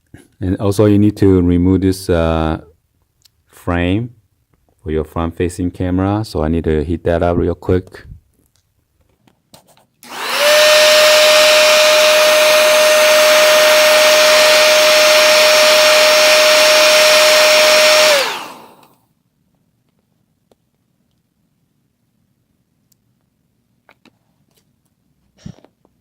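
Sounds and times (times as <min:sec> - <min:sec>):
hair dryer running: 0:10.0 - 0:19.0.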